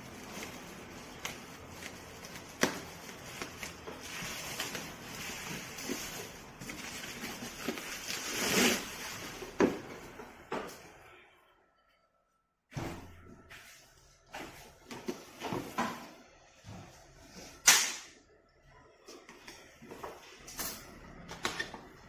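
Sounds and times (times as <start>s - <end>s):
packaging rustling: 0.0s - 9.8s.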